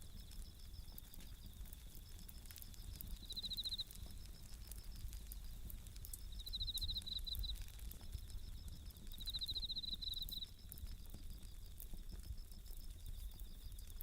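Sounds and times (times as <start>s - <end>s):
campfire crackling and popping: 0.0s - 14.0s
crickets trilling: 0.0s - 14.0s
faint steady chirring: 0.0s - 14.0s.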